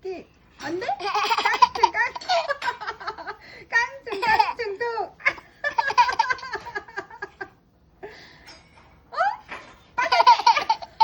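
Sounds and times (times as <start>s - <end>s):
baby laughing: 1.0s - 2.8s, 4.1s - 4.5s, 5.3s - 6.9s, 10.0s - 11.0s.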